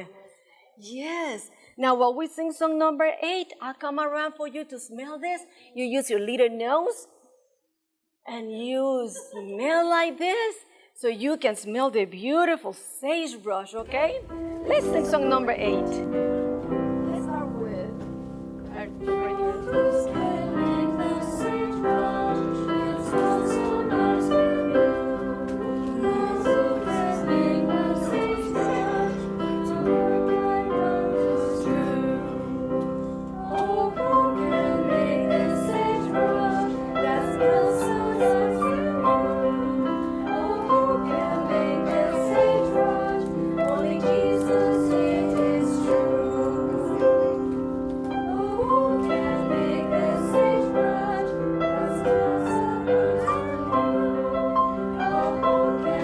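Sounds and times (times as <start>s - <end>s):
children's song on piano: 14.2s - 56.0s
woman singing: 18.7s - 47.6s, 48.2s - 56.0s.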